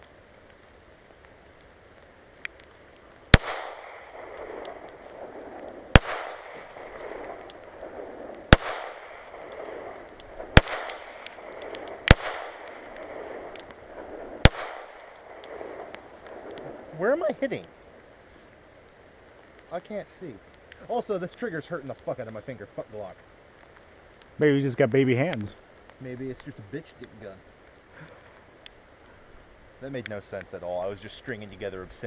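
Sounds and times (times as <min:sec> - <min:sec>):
pistol shots with echo: 0:03.3 - 0:04.6, 0:05.9 - 0:07.3, 0:08.5 - 0:09.9, 0:10.5 - 0:13.4, 0:14.4 - 0:15.6.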